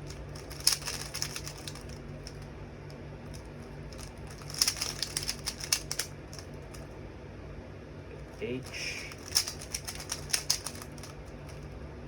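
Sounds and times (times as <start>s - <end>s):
puzzle cube turning clicks: 0.0s - 2.4s, 3.3s - 6.8s, 8.6s - 11.7s
faint steady hum: 0.0s - 12.0s.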